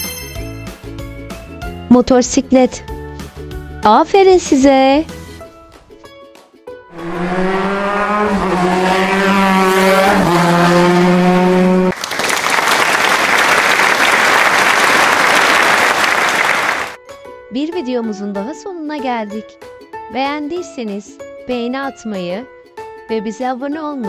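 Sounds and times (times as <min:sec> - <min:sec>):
applause: 0:11.9 - 0:17.0.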